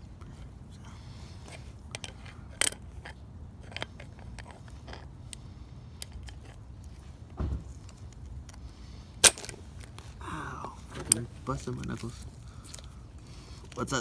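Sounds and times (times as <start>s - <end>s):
dull thump: 7.4s - 7.8s.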